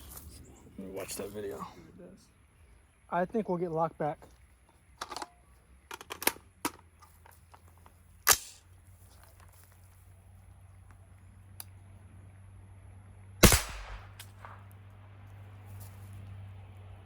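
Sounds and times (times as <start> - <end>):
rifle shots: 8.3 - 8.6, 13.4 - 14.7.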